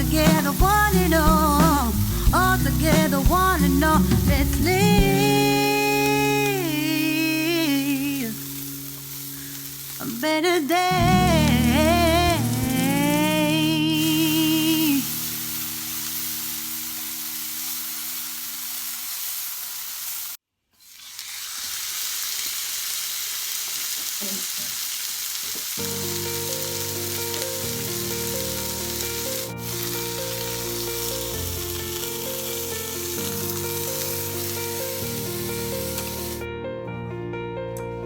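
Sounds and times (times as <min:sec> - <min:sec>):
background music: 0:00.0 - 0:17.5, 0:25.8 - 0:38.0
food sizzling in a pan: 0:00.0 - 0:36.4.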